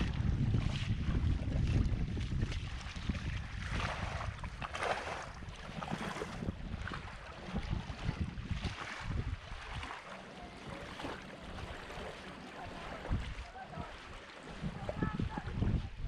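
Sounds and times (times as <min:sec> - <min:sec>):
shallow water washing on beach: 0:00.0 - 0:16.0
wind buffeting microphone: 0:00.0 - 0:16.0.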